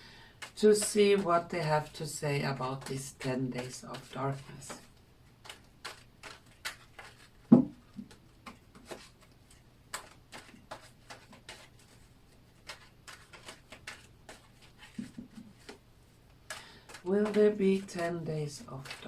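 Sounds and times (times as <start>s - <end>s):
cards being shuffled: 0.4s - 19.0s
thud: 7.5s - 7.7s.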